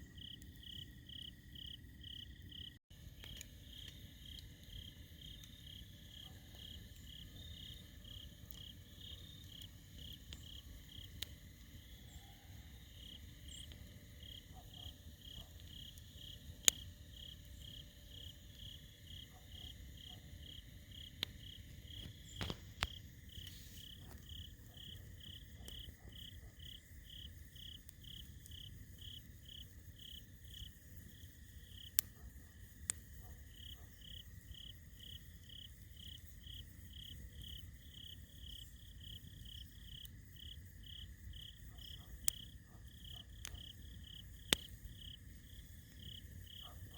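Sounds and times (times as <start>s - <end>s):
crickets chirping: 0.0s - 46.9s
fire popping: 20.9s - 33.2s, 35.2s - 46.9s
campfire rushing: 21.2s - 33.5s.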